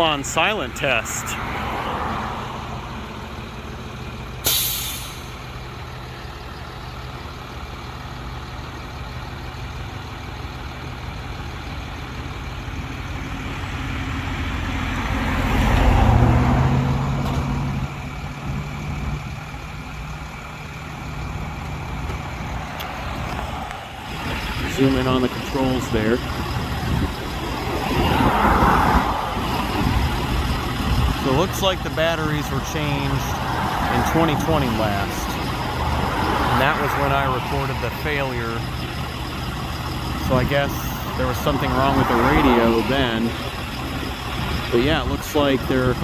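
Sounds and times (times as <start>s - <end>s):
vehicle passing: 0.0s - 3.5s, 14.1s - 17.9s, 22.3s - 46.0s
steady engine hum: 0.0s - 46.0s
short sharp air hiss: 4.5s - 5.4s.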